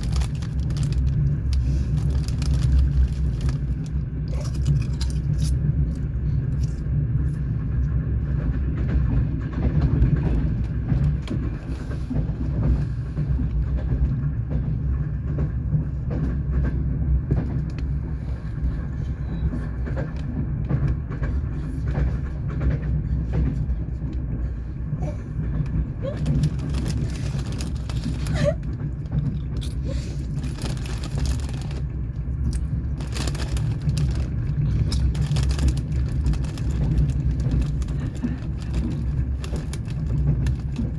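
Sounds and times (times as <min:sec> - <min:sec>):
train carriage rumbling: 0:00.0 - 0:40.9
wheels knocking over rail joints: 0:25.3 - 0:40.9.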